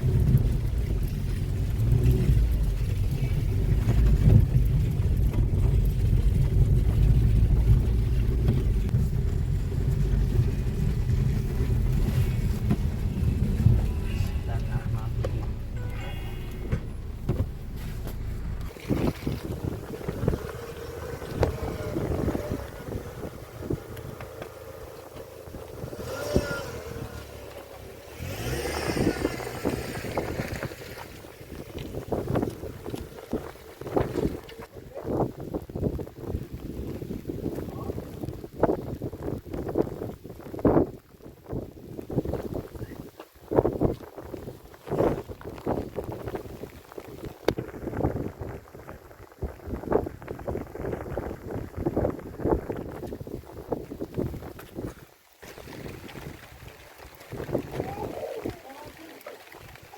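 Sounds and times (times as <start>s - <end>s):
car engine and road rumble: 0.0s - 59.9s
wind noise on microphone: 0.0s - 59.9s
car jolt: 15.1s - 27.6s.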